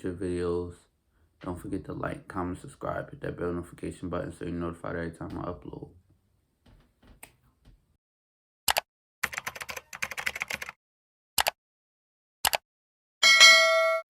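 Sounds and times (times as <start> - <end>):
keyboard-like clicks: 8.7 - 10.8, 12.4 - 12.6.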